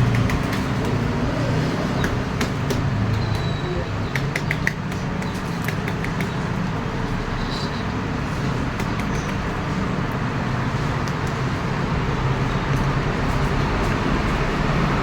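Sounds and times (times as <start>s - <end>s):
low rumble of traffic: 0.0s - 15.0s.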